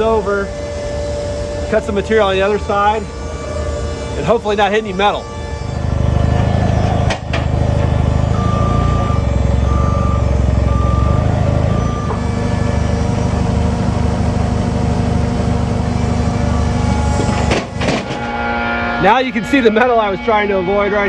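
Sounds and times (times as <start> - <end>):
sawmill engine running: 0.0 - 21.0
electronic warning beeps: 1.0 - 7.2, 7.9 - 13.6.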